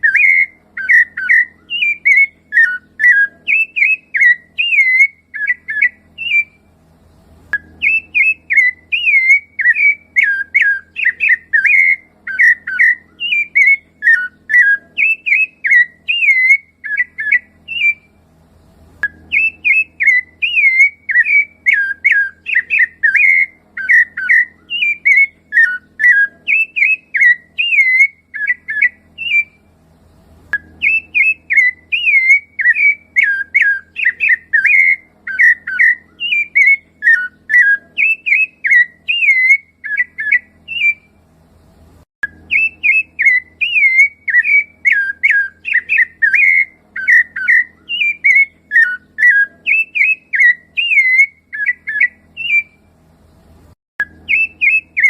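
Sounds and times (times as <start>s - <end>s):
thrush singing whistled notes: 0.0s - 55.0s.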